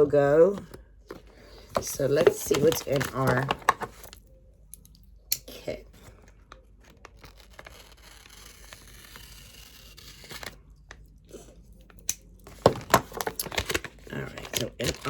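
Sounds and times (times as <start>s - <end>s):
items clicking and knocking: 0.5s - 4.2s, 11.8s - 15.0s
bag rustling and crinkling: 1.1s - 4.2s.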